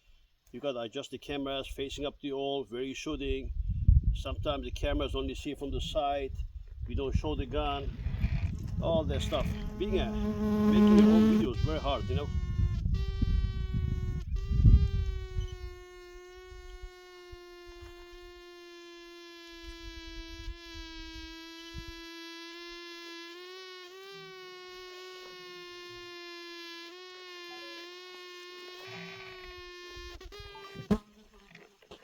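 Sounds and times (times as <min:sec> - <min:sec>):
fly buzzing: 0:07.5 - 0:32.0.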